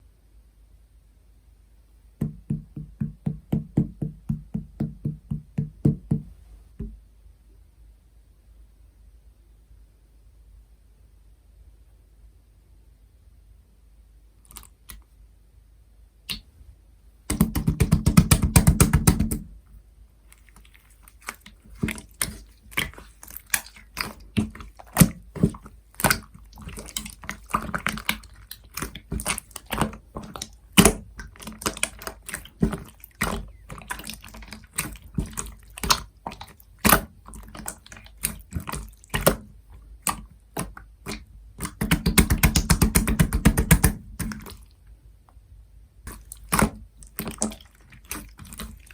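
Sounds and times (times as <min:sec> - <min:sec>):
slime squished by hand: 0:20.3 - 0:44.7, 0:46.1 - 0:48.9.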